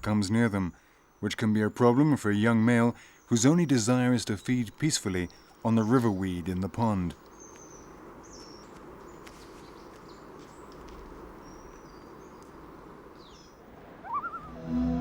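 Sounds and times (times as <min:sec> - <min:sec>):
low steady hiss: 0:00.0 - 0:15.0
high bird chirps: 0:13.2 - 0:15.0
rising wavering tone: 0:14.0 - 0:15.0.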